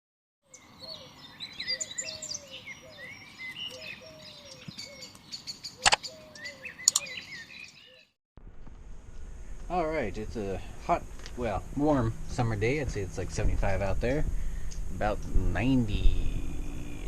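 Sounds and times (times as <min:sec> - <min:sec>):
songbirds chirping: 0:00.4 - 0:08.2, 0:09.4 - 0:17.0
sharp clicks: 0:05.8 - 0:06.0, 0:06.8 - 0:07.2.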